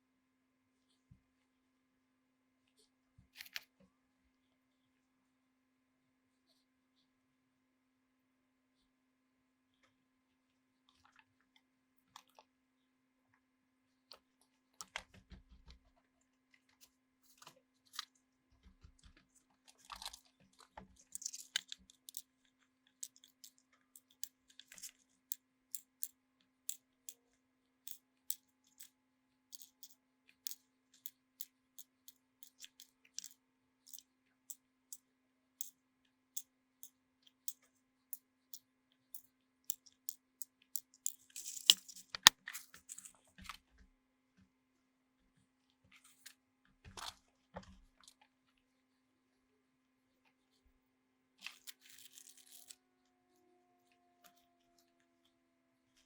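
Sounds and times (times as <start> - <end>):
rustling handling noises: 41.0 - 43.8, 51.4 - 52.8.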